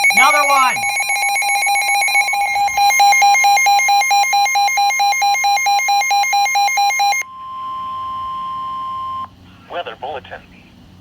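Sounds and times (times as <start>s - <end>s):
rapidly pulsing electronic beep: 0.0s - 7.2s
steady high tone: 0.0s - 9.3s.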